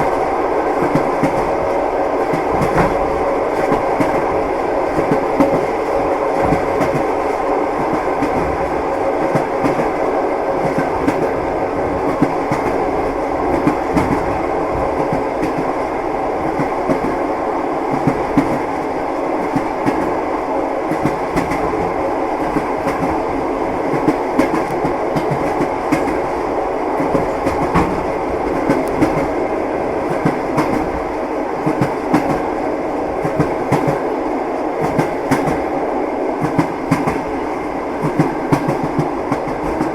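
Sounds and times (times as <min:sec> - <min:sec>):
train wheels clattering: 0:02.2 - 0:04.3.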